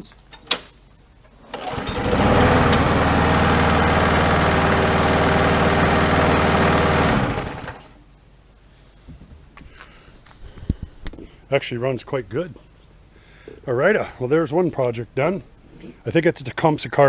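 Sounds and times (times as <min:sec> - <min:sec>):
lawn mower engine running: 0:01.4 - 0:08.0.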